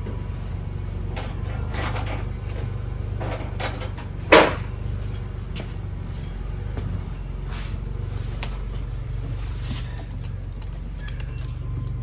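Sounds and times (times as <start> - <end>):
steady low hum: 0.0 - 12.0
tools clattering: 1.2 - 4.7
sharp clunk: 4.3 - 4.7.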